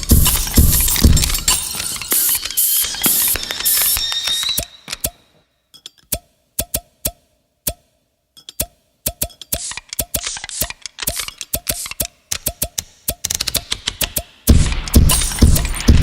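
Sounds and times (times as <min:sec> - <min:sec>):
pitched thump beat: 0:00.0 - 0:01.7, 0:11.5 - 0:16.0.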